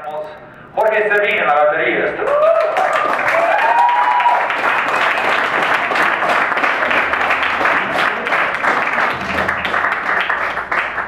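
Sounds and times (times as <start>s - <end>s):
audience applauding: 2.3s - 11.0s.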